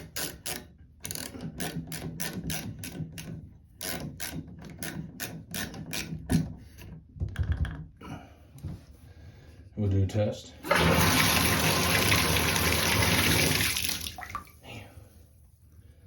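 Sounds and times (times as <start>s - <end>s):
hand tool ratcheting clicks: 0.0s - 6.3s.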